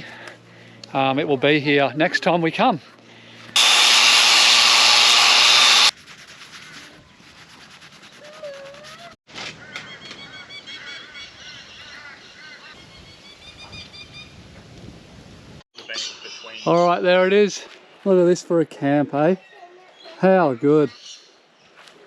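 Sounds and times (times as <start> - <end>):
loud steady rushing noise: 3.6 - 5.9
birds calling: 9.5 - 14.3, 15.8 - 18.0.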